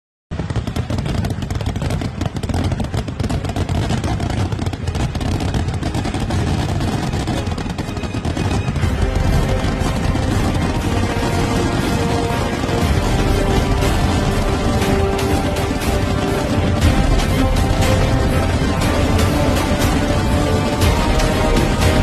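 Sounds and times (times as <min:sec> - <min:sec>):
firecrackers crackling: 0:00.3 - 0:22.0
music: 0:03.0 - 0:22.0
heavy low boom: 0:04.5 - 0:22.0.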